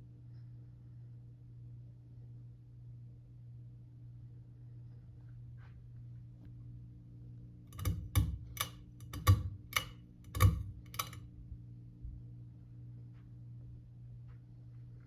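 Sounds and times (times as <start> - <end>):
ceiling fan motor humming: 7.2 - 12.1
sharp clicks: 7.7 - 11.2.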